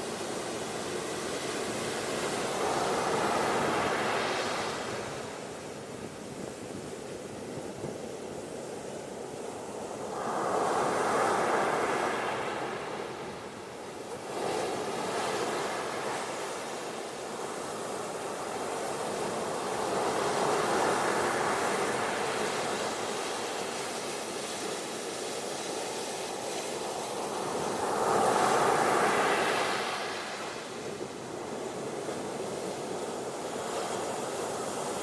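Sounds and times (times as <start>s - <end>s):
ocean waves breaking on beach: 0.0s - 35.0s.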